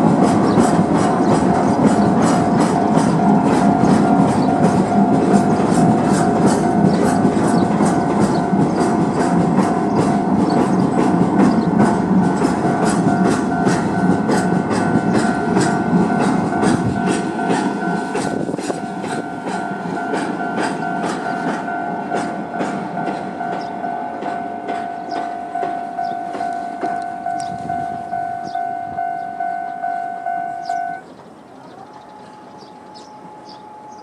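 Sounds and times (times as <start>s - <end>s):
train running over rails: 0.0s - 34.0s
level-crossing electronic bell: 2.7s - 8.7s, 12.5s - 31.0s, 32.2s - 34.0s.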